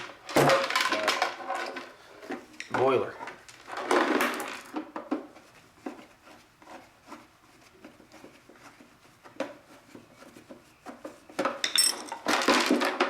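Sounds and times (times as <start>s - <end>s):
metal parts clicking and knocking: 11.4s - 13.0s
metallic clatter with ring: 11.6s - 12.2s.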